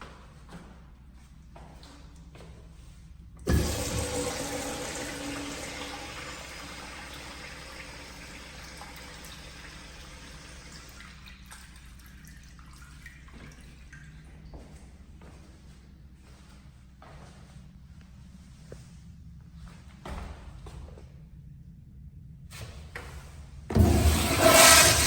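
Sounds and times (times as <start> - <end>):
toilet flushing: 3.4 - 14.7, 23.7 - 25.0.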